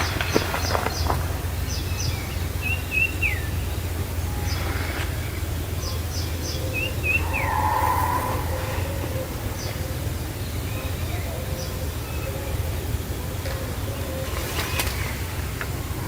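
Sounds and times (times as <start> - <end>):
steady low rumble: 0.0 - 12.0
weaver birds calling: 0.0 - 16.0.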